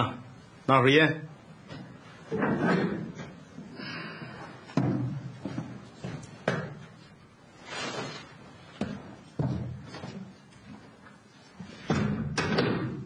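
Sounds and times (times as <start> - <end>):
objects knocking and thudding: 4.7 - 7.0, 8.7 - 10.4, 11.6 - 13.0.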